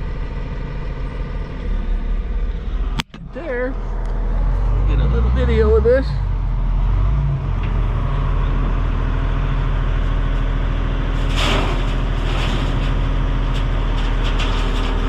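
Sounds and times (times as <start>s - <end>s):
loader engine running: 0.0s - 15.0s
gravel dumping rush: 7.7s - 15.0s.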